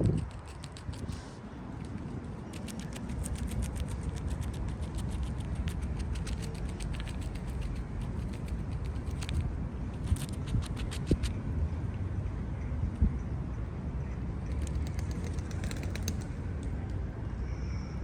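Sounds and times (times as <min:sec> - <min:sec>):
squirrel gnawing and chewing: 0:00.0 - 0:11.4, 0:14.4 - 0:17.0.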